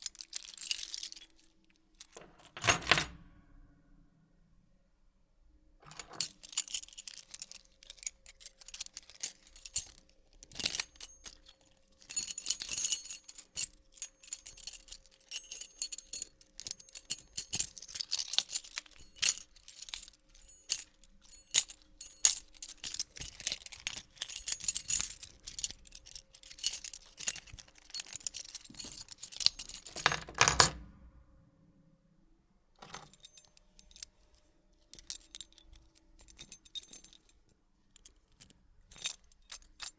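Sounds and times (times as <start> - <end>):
metal keys jingling: 0.0 - 3.1, 5.9 - 30.8, 32.8 - 34.1, 35.0 - 37.4.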